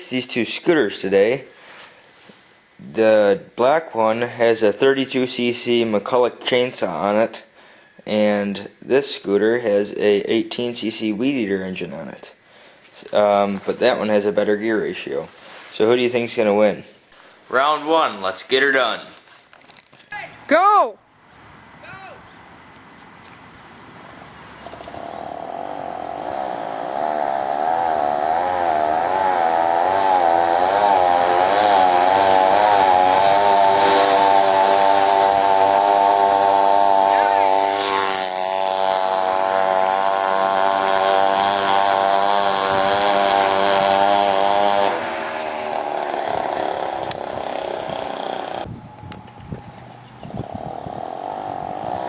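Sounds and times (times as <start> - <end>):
small two-stroke engines buzzing: 24.4 - 52.0.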